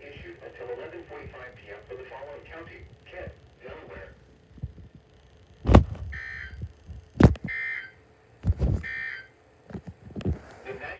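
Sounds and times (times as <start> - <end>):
loud thump: 5.7 - 6.1
two-tone digital data warble: 6.1 - 6.6.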